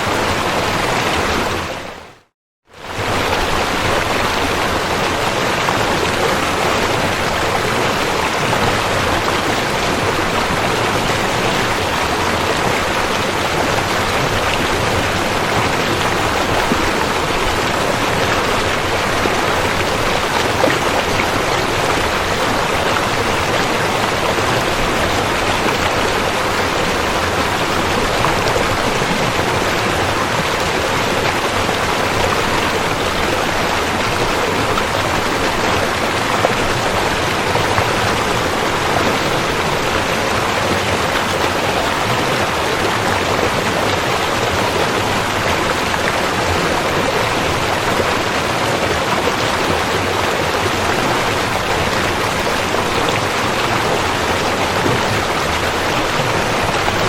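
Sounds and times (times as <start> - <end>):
river water flowing: 0.0 - 57.0.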